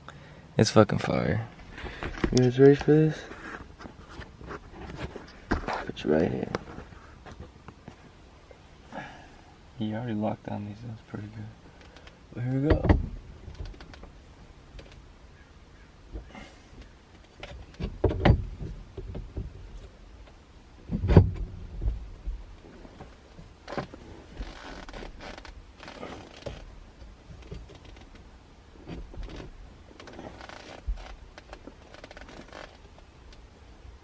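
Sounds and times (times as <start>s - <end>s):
rustling: 1.5s - 8.6s, 13.0s - 33.4s
heavy thumps: 12.6s - 13.9s, 17.4s - 19.8s, 20.8s - 26.7s.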